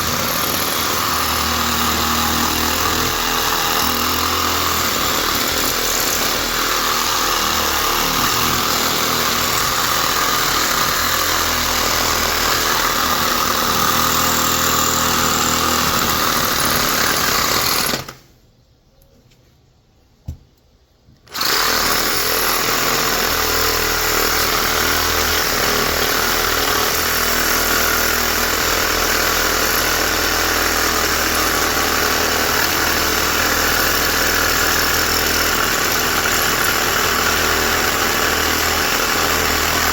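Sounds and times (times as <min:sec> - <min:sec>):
reciprocating saw cutting metal: 0:00.0 - 0:18.2, 0:21.3 - 0:39.9.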